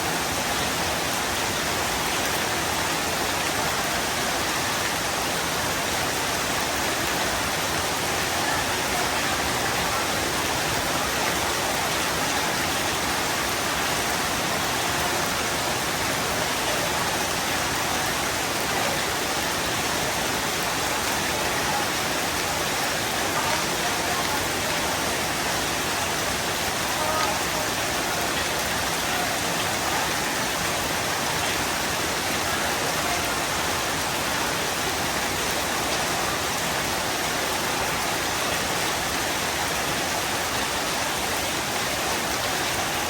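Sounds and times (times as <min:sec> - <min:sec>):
heavy rain pouring: 0:00.0 - 0:43.0.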